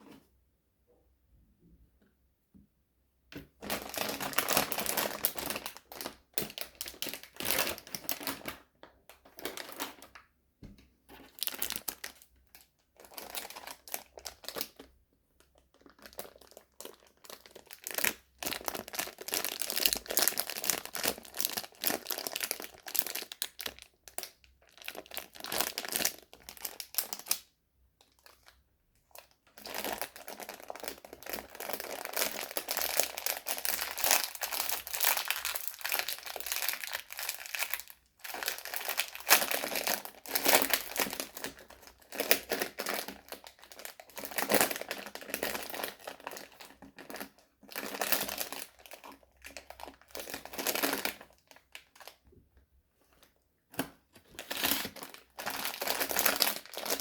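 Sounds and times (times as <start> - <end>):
sweet wrappers crinkling: 11.3 - 27.4, 28.1 - 52.2, 54.1 - 57.0.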